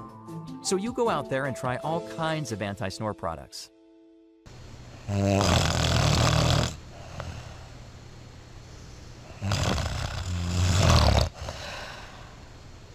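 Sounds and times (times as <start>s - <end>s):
person snoring: 5.0s - 7.7s, 9.2s - 12.5s.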